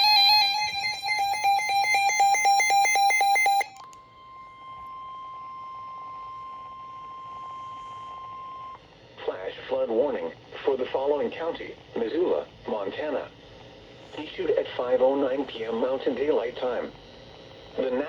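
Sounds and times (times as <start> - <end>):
electronic alarm beeps: 0.0 - 8.8
steady single-pitch warning tone: 0.0 - 8.9.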